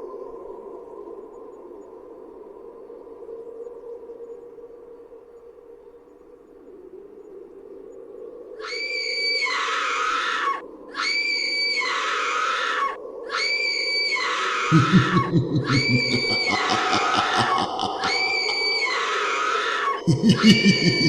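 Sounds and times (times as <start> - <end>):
rapid low grunting: 14.7 - 18.8, 20.0 - 21.0
low drone: 14.7 - 19.3, 19.9 - 21.0.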